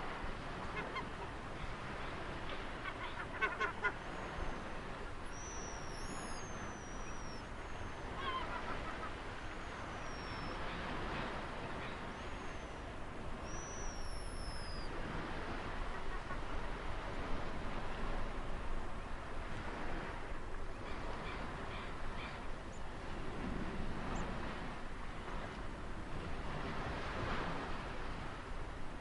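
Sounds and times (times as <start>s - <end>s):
ocean surf: 0.0s - 29.0s
birds calling: 0.7s - 14.9s.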